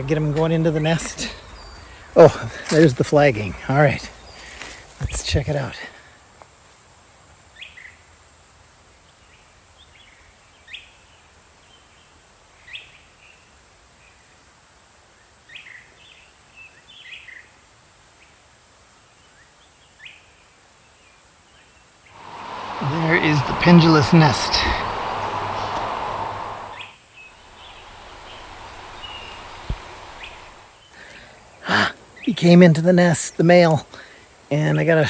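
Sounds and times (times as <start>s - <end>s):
birds chirping: 0.0s - 4.8s, 22.2s - 30.7s
high-pitched insect drone: 27.5s - 30.6s.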